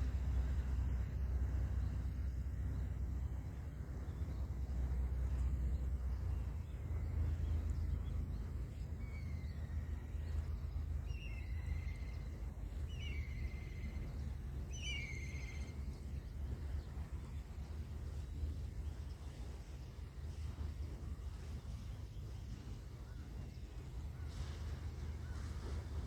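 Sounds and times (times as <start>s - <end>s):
steady low rumble: 0.0s - 26.0s.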